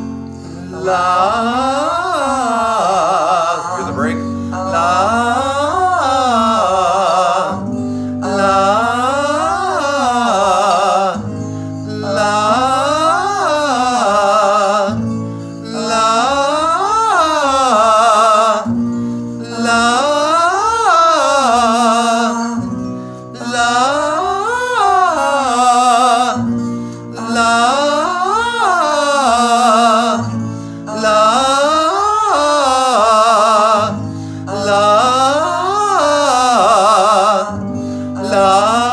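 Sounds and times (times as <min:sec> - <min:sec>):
accompaniment chords: 0:00.0 - 0:13.6
man singing vocal exercises: 0:00.0 - 0:38.9.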